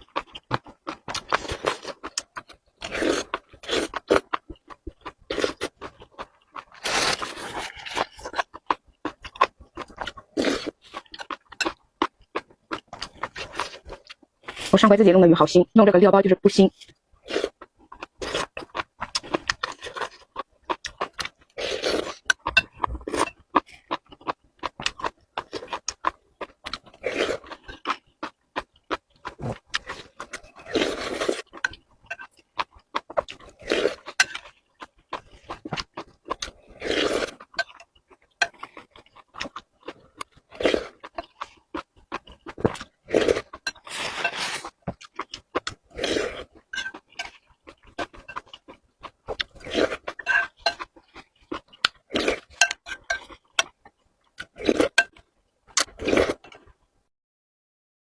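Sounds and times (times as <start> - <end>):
wet chewing and lip smacking: 16.9 - 56.7.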